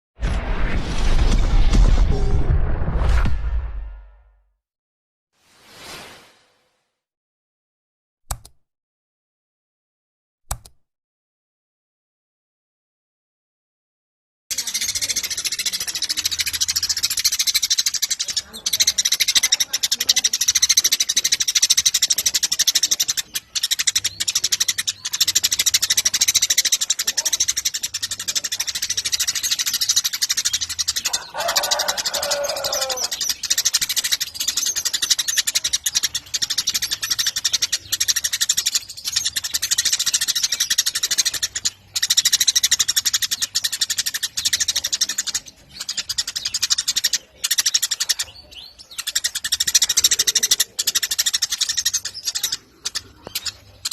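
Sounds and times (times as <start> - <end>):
sparrows chirping: 14.5 - 53.9
lower falling bird call: 31.1 - 33.3.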